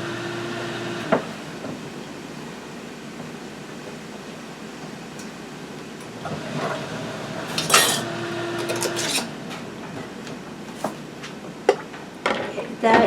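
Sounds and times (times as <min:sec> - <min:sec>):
utensils clinking against glass jars: 0:07.5 - 0:09.3.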